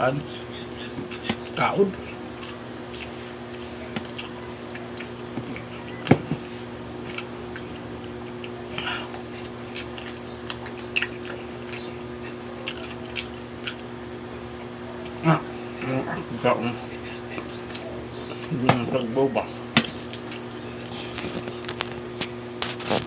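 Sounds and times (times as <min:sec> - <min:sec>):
steady low hum: 0:00.0 - 0:23.0
person chewing wet food: 0:01.1 - 0:16.0, 0:19.8 - 0:21.5.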